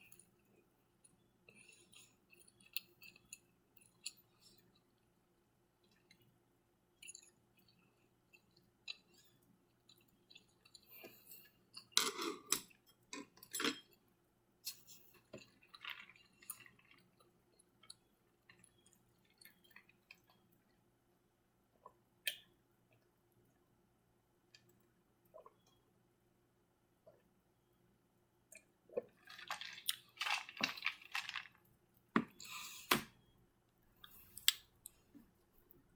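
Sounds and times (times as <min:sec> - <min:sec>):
quiet chewing: 0:00.0 - 0:05.1, 0:07.0 - 0:13.9, 0:28.5 - 0:32.8, 0:33.8 - 0:35.9.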